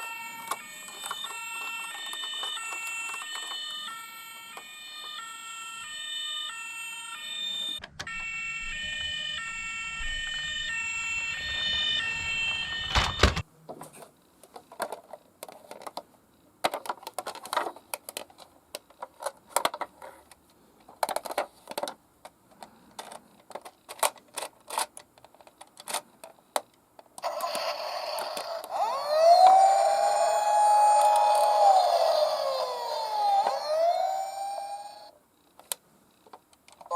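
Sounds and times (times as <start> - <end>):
toy electronic siren: 0.0 - 13.4, 27.2 - 35.2
toy siren rising wail: 0.0 - 13.4, 27.2 - 35.2
toy cars clicking and knocking: 0.2 - 5.2, 14.4 - 36.9.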